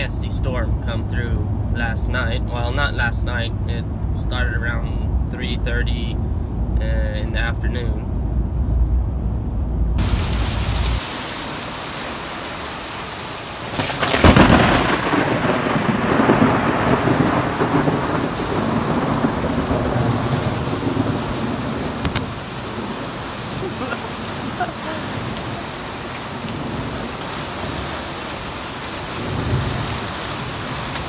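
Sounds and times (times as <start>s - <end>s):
wind: 0.0s - 31.0s
hard rain: 10.0s - 31.0s
rolling thunderclap: 13.5s - 28.2s.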